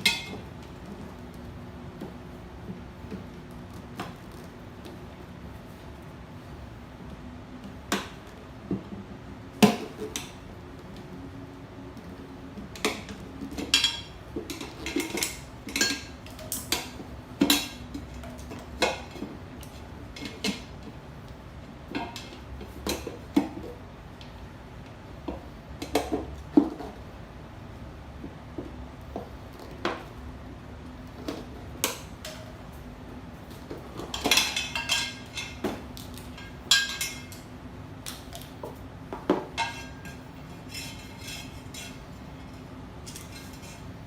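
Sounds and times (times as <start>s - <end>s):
metal tools clanking: 34.0s - 35.7s.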